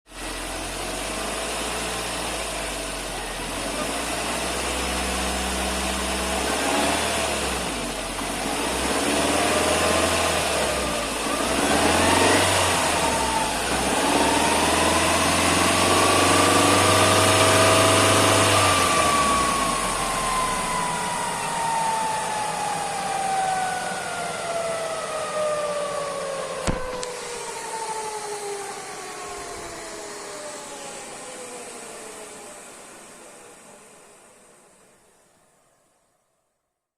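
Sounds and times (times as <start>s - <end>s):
car engine revving: 0.2s - 27.4s
gear whine: 0.2s - 34.4s.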